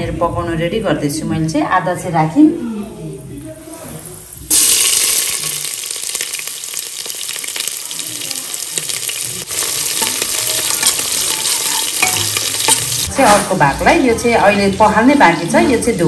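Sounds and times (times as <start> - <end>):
meat sizzling in hot oil: 4.3 - 13.4.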